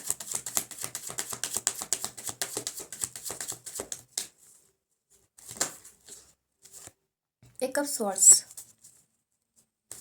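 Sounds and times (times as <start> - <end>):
cards being shuffled: 0.0 - 4.4, 5.4 - 7.0.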